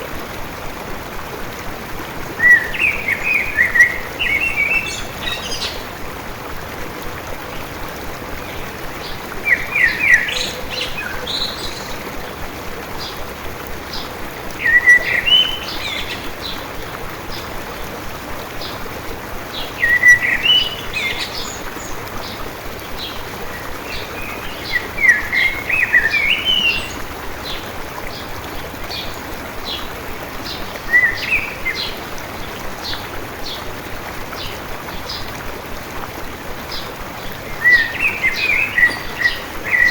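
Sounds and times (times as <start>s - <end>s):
water stream rushing: 0.0s - 39.9s
songbird singing: 2.3s - 5.9s, 8.4s - 12.4s, 13.9s - 16.6s, 19.5s - 32.0s, 36.7s - 39.9s.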